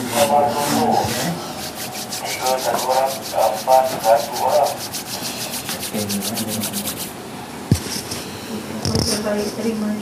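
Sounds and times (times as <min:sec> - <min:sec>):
fast rhythmic rubbing: 0:00.0 - 0:07.2.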